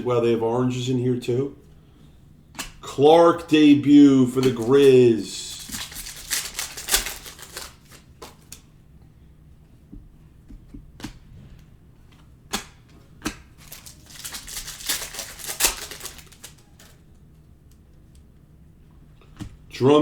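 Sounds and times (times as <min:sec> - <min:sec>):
cards rustling: 0:03.9 - 0:08.7, 0:12.6 - 0:17.2
cards clicking and snapping: 0:04.4 - 0:08.7, 0:12.5 - 0:17.0.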